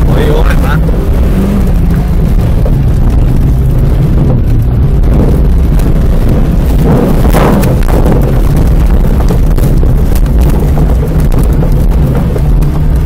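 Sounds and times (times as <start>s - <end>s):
race car engine running hard: 0.0s - 13.0s
wind buffeting microphone: 0.0s - 13.0s.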